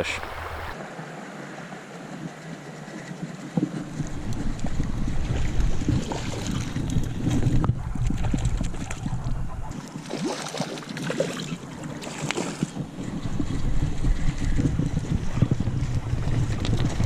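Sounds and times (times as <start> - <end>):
wind buffeting microphone: 0.0 - 0.8, 2.0 - 10.1, 11.6 - 17.0
stream rushing: 0.0 - 1.8.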